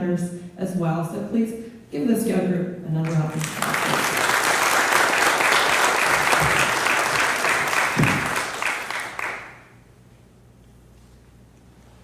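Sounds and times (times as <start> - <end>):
crowd clapping: 3.0 - 9.8.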